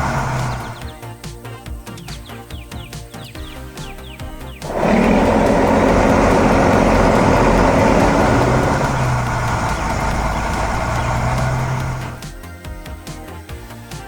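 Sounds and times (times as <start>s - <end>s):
heavy vehicle engine: 0.0s - 0.9s, 4.6s - 12.3s
low hum: 0.0s - 0.9s, 4.6s - 12.3s.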